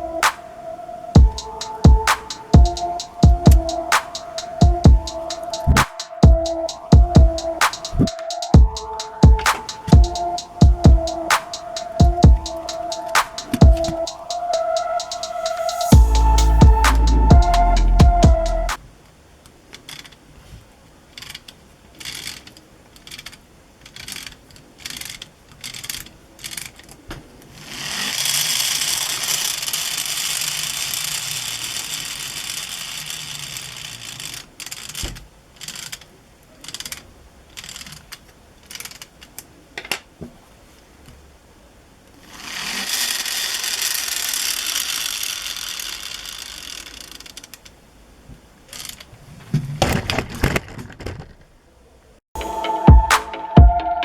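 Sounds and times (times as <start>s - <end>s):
air hissing rush: 0.0s - 18.8s.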